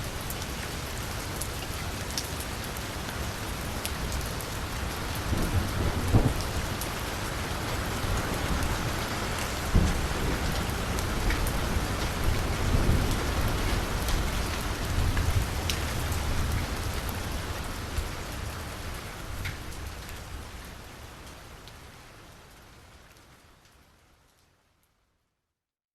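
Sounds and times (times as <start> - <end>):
rain on a street: 0.0 - 25.0.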